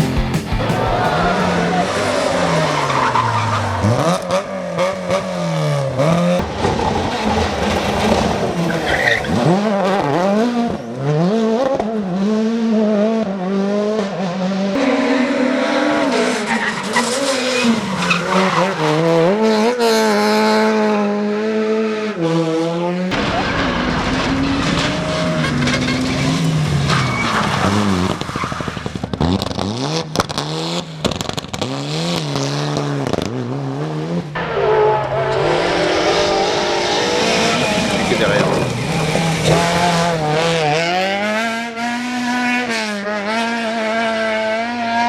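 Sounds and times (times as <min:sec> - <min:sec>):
rally car engine revving: 0:00.0 - 0:45.0.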